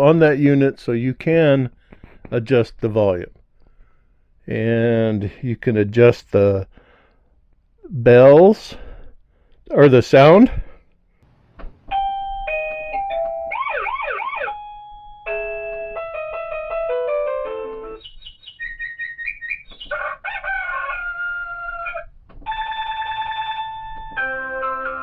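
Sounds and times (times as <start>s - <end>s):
doorbell ringtones from loudspeaker: 11.9s - 16.4s, 22.5s - 25.0s.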